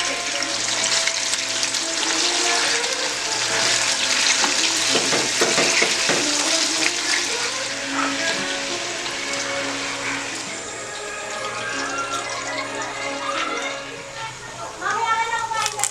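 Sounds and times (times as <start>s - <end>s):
pork sizzling in a pan: 0.0s - 15.9s.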